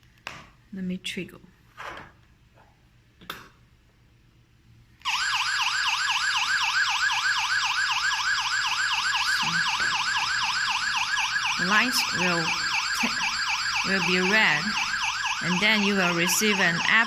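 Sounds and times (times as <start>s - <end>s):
electronic alarm siren warbling: 5.1s - 17.0s.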